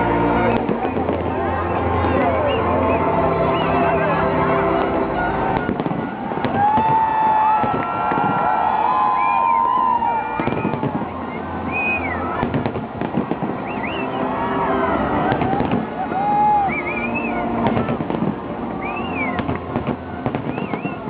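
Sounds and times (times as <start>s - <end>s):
people's voices: 0.0s - 7.0s
fireworks bangs and crackles: 0.4s - 3.0s, 4.7s - 21.0s.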